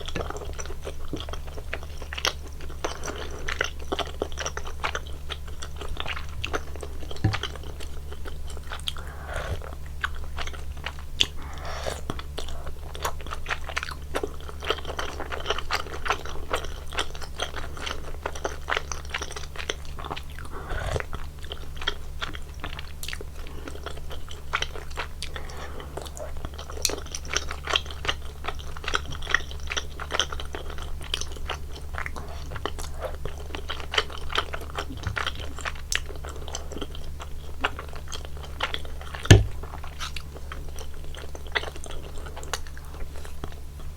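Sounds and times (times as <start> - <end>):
steady low hum: 0.0 - 14.8, 39.1 - 43.9
wet chewing and smacking: 0.0 - 43.9.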